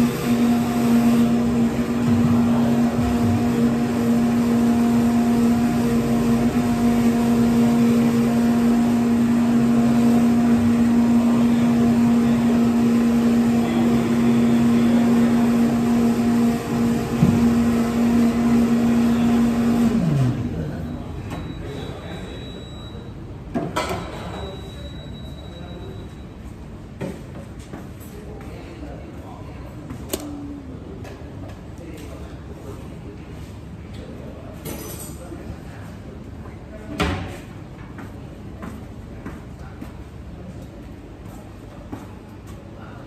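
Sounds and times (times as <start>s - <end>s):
machine humming and winding down: 0.0s - 21.2s.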